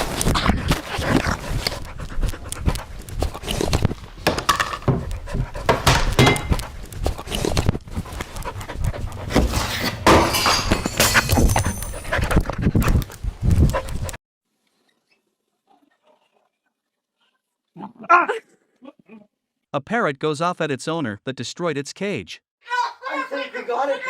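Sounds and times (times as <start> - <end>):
dog panting: 0.1 - 4.2, 4.8 - 14.2
thuds and knocks: 4.2 - 6.6.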